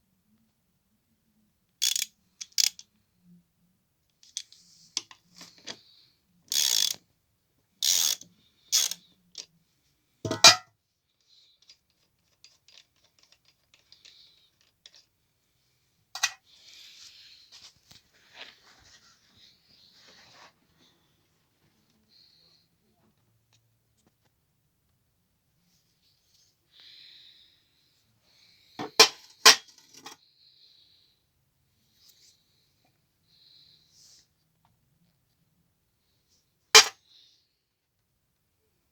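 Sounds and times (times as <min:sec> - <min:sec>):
metal tools being handled: 0:10.3 - 0:10.6.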